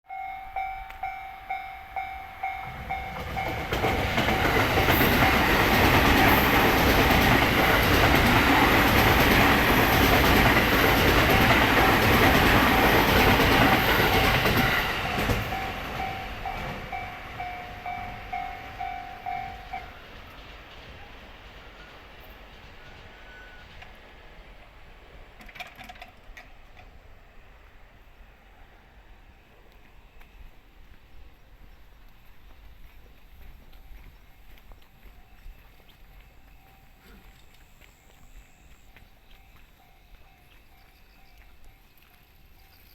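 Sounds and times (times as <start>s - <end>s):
level-crossing warning bell: 0.0s - 8.6s, 10.4s - 20.3s, 21.0s - 23.8s, 33.6s - 42.9s
train passing: 0.1s - 42.9s.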